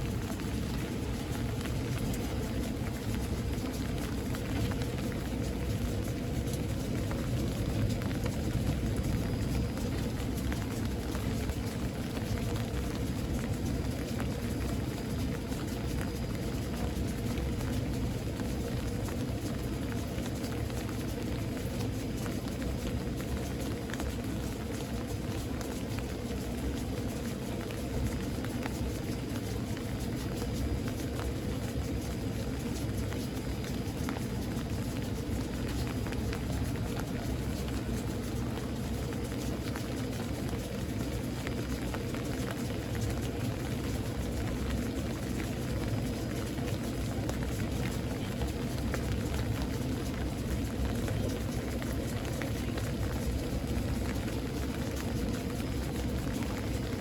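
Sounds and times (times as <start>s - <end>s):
low steady rumble: 0.0s - 57.0s
steady rain: 0.0s - 57.0s.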